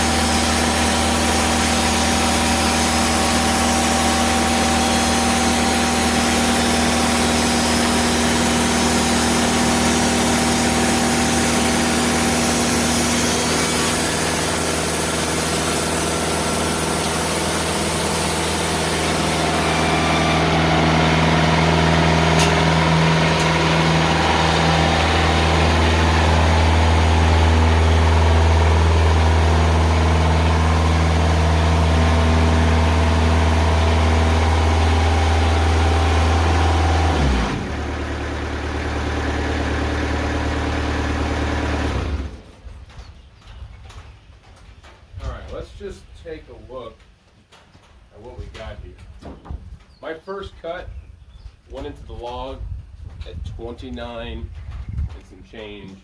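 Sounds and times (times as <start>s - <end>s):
band saw blade cutting log: 0.0s - 42.4s
diesel engine running: 0.0s - 43.0s.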